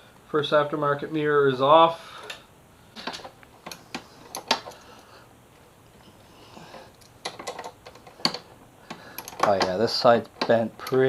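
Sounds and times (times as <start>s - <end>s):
small parts and tools clicking: 3.0s - 5.0s, 6.6s - 11.0s.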